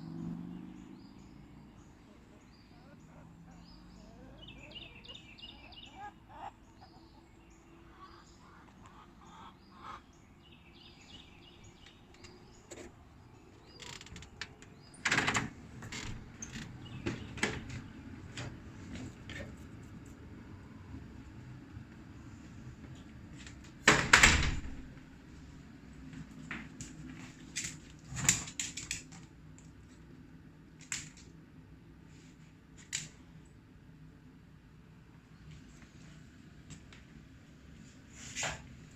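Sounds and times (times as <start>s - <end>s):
birds chirping: 0.0s - 26.2s
sharp clicks and knocks: 13.8s - 19.5s
sharp cracks and knocks: 26.5s - 29.3s, 30.8s - 31.4s.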